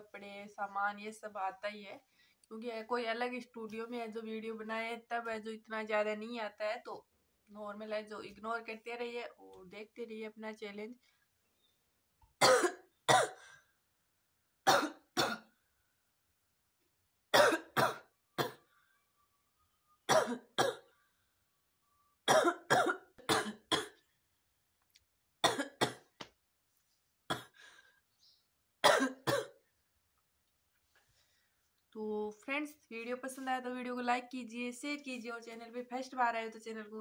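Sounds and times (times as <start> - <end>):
woman coughing: 12.4 - 13.5, 14.7 - 15.5, 17.3 - 18.6, 20.1 - 20.9, 22.3 - 24.0, 25.4 - 26.1, 28.8 - 29.6.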